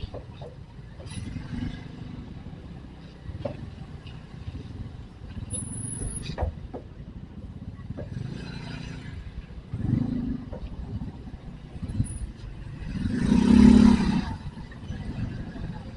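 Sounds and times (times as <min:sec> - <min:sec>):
knocks and rattles: 0:00.0 - 0:01.4, 0:05.5 - 0:07.2
motorcycle engine and road rumble: 0:00.0 - 0:15.9.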